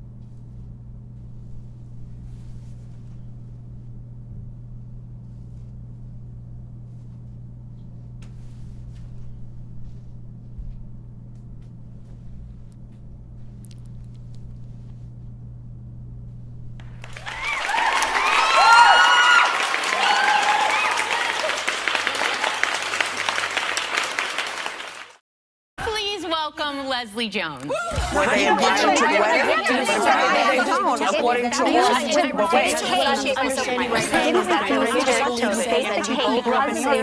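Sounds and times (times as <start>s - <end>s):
low room hum: 0.0s - 24.4s, 25.8s - 37.0s
faint rustles and clicks: 6.8s - 15.4s
audience applause with whoops: 16.8s - 25.2s.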